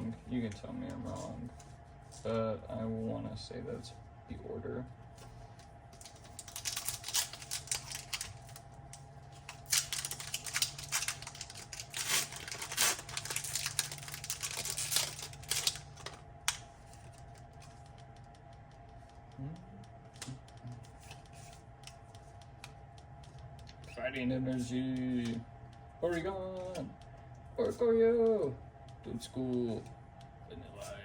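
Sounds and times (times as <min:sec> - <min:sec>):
foil wrapper tearing and crinkling: 0:06.0 - 0:08.6, 0:09.4 - 0:17.2.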